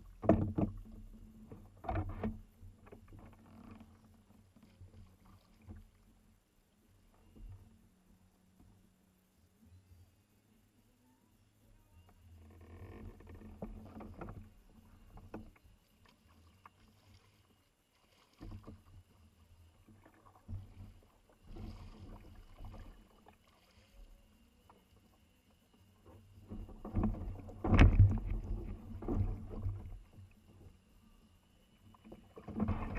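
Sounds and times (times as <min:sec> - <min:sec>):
thump on kayak hull: 0:00.1 - 0:01.0, 0:26.4 - 0:30.0
kayak paddle splashing: 0:13.2 - 0:32.9.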